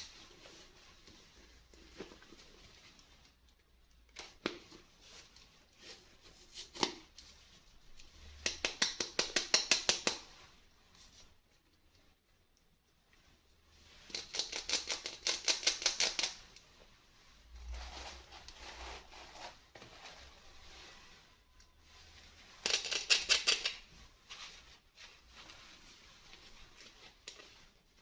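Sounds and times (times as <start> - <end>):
handling rustle: 0.0 - 3.8.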